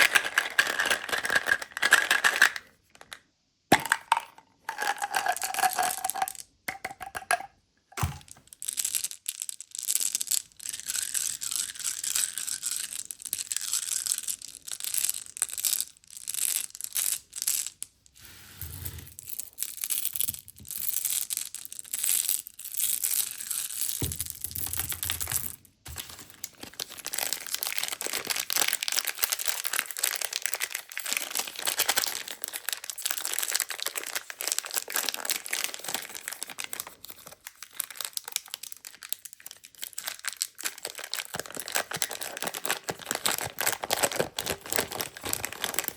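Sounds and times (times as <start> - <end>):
plastic packaging crinkling: 0.0 - 3.2, 23.0 - 45.9
hard candies rattling: 0.0 - 17.8, 19.2 - 45.9.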